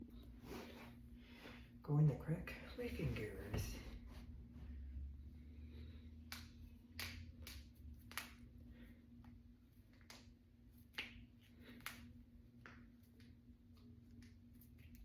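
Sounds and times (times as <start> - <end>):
knuckles cracking: 6.2 - 8.6, 9.2 - 15.0.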